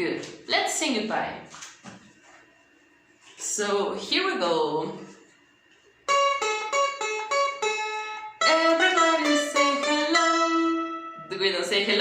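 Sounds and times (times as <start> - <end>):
plucked guitar notes: 6.1 - 11.4.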